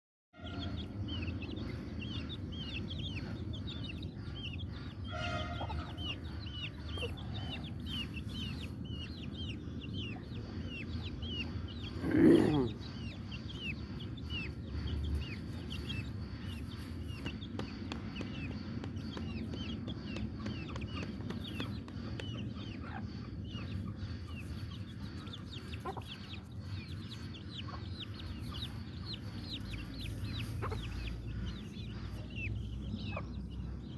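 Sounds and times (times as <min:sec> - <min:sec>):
chickens peeping: 0:00.4 - 0:33.9
loud pitched chicken call: 0:05.1 - 0:06.0.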